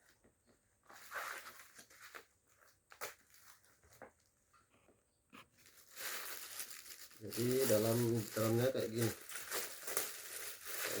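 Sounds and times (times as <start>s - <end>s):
packaging rustling: 5.5s - 11.0s.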